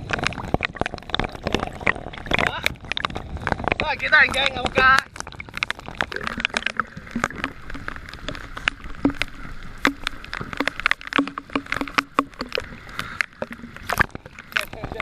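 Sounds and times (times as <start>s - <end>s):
seawater splashing: 0.0s - 15.0s
water gurgling: 0.0s - 15.0s.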